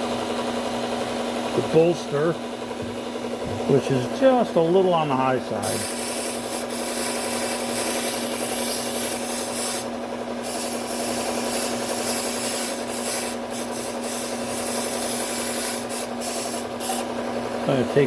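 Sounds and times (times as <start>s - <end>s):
belt sander motor hum: 0.0s - 18.0s
knife grinding hiss: 5.6s - 17.1s.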